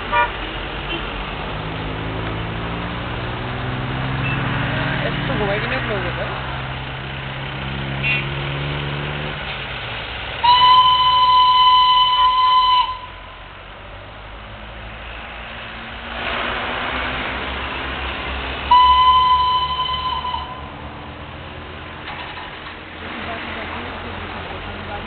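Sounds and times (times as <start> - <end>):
train rumbling: 0.0 - 25.0
train whistle blasts: 10.4 - 13.2, 18.7 - 20.7.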